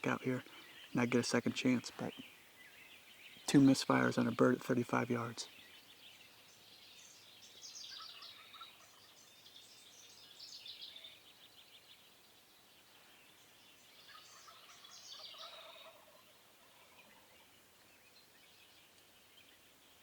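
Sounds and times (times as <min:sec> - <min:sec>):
distant turkey gobbles: 0:07.9 - 0:09.3, 0:14.0 - 0:17.6.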